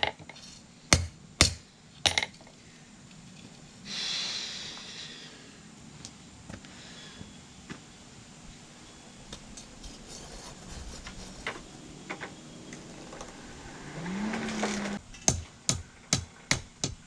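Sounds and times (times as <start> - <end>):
low hum: 7.2 - 15.2.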